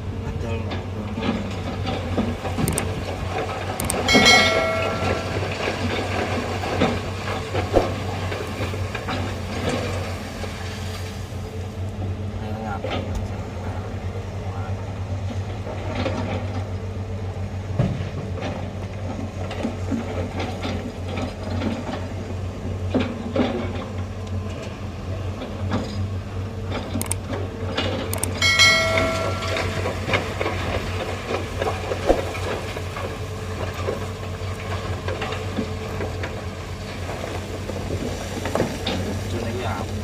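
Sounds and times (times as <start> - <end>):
heavy diesel machinery running: 0.0 - 40.0
metallic clanks and knocks: 3.8 - 9.3, 27.8 - 33.1.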